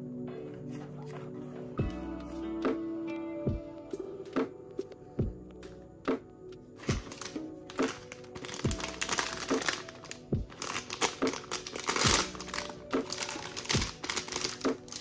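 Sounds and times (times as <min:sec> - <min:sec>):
background music with beat: 0:00.0 - 0:15.0
plastic packaging crinkling: 0:06.8 - 0:15.0.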